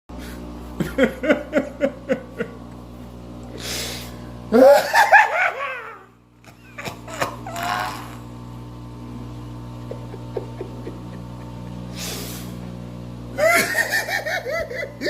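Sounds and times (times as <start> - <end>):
person laughing: 0.2 - 2.7, 4.5 - 8.2, 9.8 - 12.4, 13.3 - 15.0.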